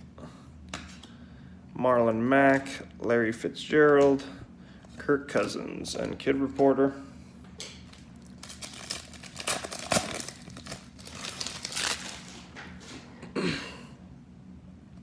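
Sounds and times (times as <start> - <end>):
wrapper crinkling and tearing: 7.8 - 12.6.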